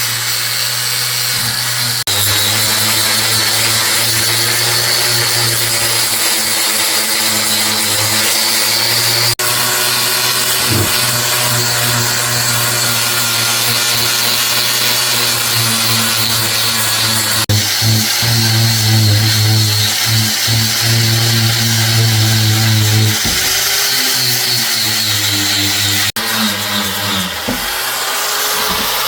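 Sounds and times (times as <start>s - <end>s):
power tool motor humming: 0.0s - 29.0s
abrasive hissing on metal: 10.5s - 11.5s.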